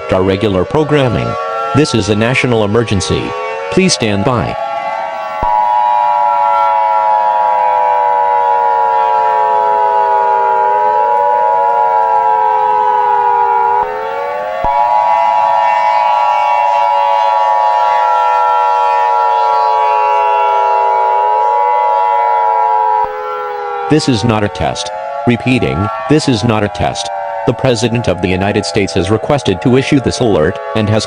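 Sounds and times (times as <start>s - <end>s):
siren tones falling and sweeping: 0.0s - 31.0s.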